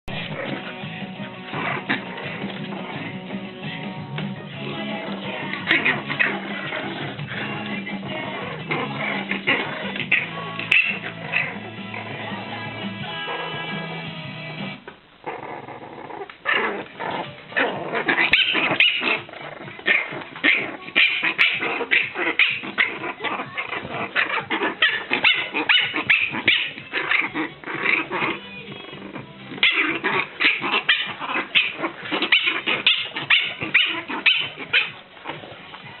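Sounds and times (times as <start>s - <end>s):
dog barking and yapping: 9.2s - 11.6s, 17.5s - 28.4s, 29.6s - 35.4s.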